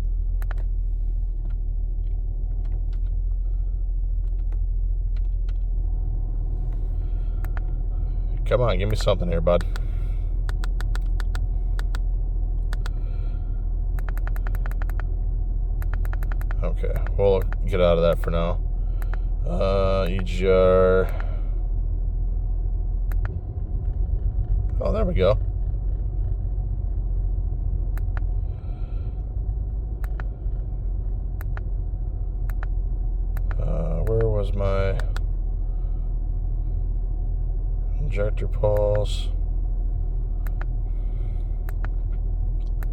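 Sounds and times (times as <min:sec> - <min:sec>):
car engine idling: 0:00.0 - 0:42.9
sharp clicks: 0:00.4 - 0:00.7, 0:07.4 - 0:07.8, 0:08.8 - 0:12.0, 0:12.6 - 0:13.2, 0:13.9 - 0:15.1, 0:15.8 - 0:17.8, 0:19.0 - 0:19.3, 0:23.1 - 0:24.8, 0:27.9 - 0:28.3, 0:30.0 - 0:30.6, 0:31.3 - 0:31.7, 0:32.4 - 0:35.3, 0:40.4 - 0:40.8, 0:41.6 - 0:42.9.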